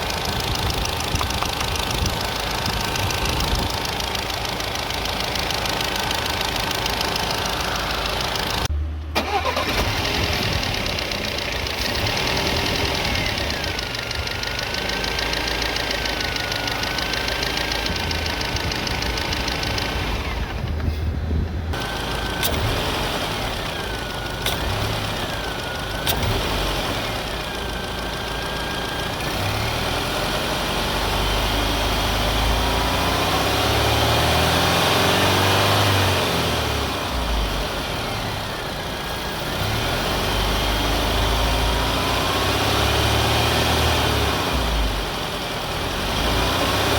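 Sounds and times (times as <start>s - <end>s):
car engine idling: 0.0s - 29.3s.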